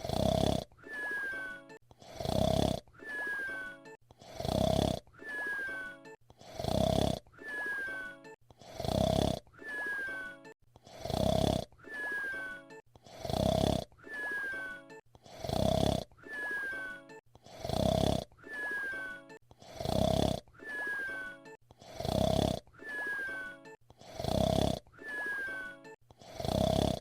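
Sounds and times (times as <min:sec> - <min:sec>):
cartoon whistle snore: 0:00.0 - 0:27.0.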